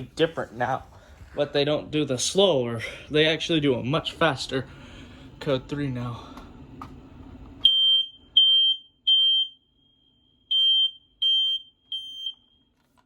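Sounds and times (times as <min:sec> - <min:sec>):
smoke alarm beeping: 0:07.6 - 0:12.7.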